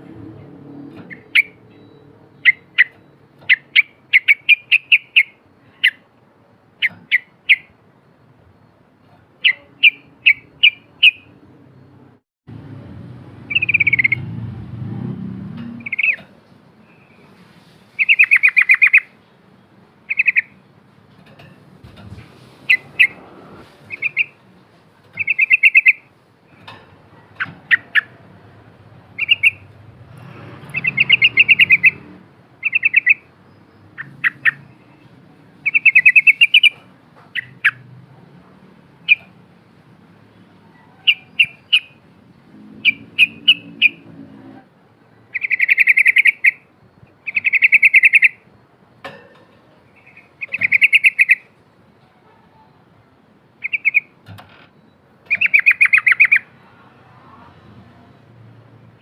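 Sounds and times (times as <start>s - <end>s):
bulbul singing: 0.9s - 6.1s, 6.7s - 12.1s, 13.4s - 14.3s, 15.6s - 17.3s, 18.0s - 20.8s, 22.7s - 23.2s, 23.9s - 24.4s, 25.2s - 28.4s, 29.0s - 29.9s, 30.6s - 37.9s, 39.0s - 39.4s, 40.3s - 42.1s, 42.8s - 44.1s, 45.3s - 49.2s, 49.8s - 51.6s, 53.6s - 54.2s, 54.8s - 56.7s.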